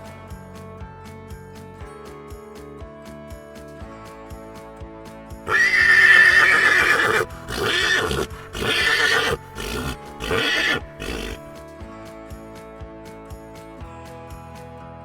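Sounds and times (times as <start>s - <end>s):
background music: 0.0s - 15.0s
horse whinnying: 5.5s - 11.5s.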